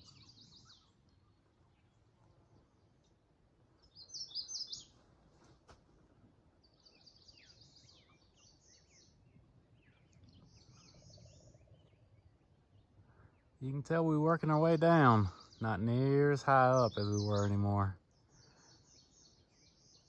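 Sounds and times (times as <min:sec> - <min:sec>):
songbirds singing: 0:00.0 - 0:05.2, 0:06.2 - 0:20.0.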